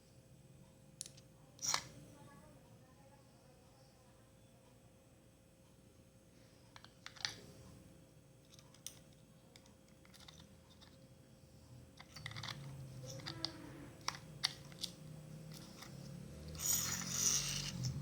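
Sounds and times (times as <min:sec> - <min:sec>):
plastic parts clicking: 0:06.8 - 0:07.4, 0:08.5 - 0:11.0, 0:12.0 - 0:17.5.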